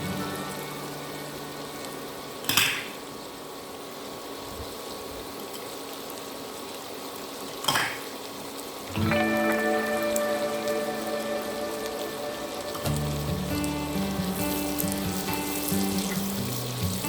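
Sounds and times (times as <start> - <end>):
loud pan noise bursts: 0.0 - 3.2, 8.9 - 17.0
food sizzling in hot oil: 0.0 - 17.0.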